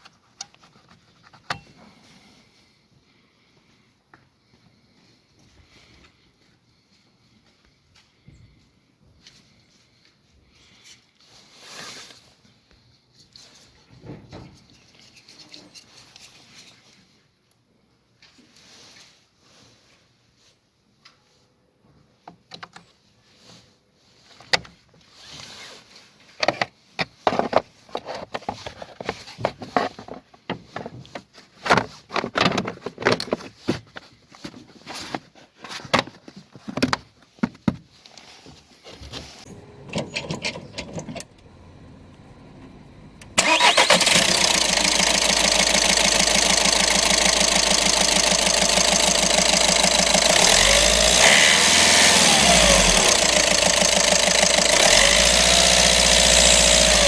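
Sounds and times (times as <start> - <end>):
car engine starting and running: 39.5 - 57.0.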